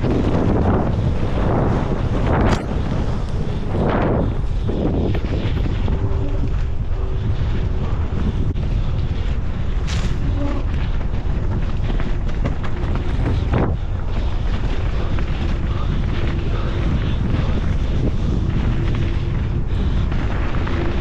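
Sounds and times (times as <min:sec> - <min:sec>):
wind buffeting microphone: 0:00.0 - 0:21.0
bike knocks and rattles: 0:08.3 - 0:21.0.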